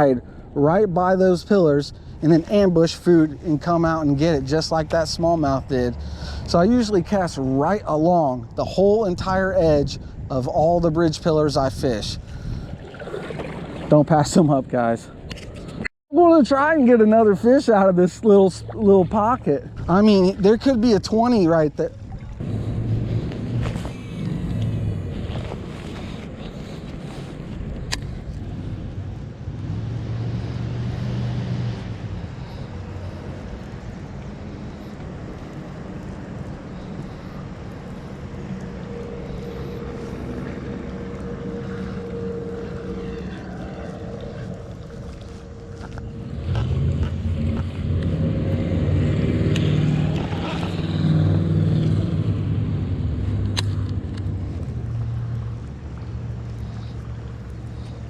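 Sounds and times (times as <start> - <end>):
traffic hum on bridge: 0.0 - 58.0
loud vehicle passing: 22.1 - 26.7, 28.5 - 58.0.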